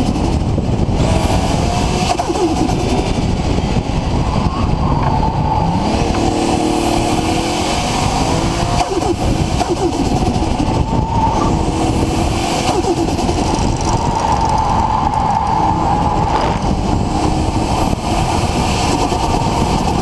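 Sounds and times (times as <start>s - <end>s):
turbo engine revving: 0.0s - 20.0s.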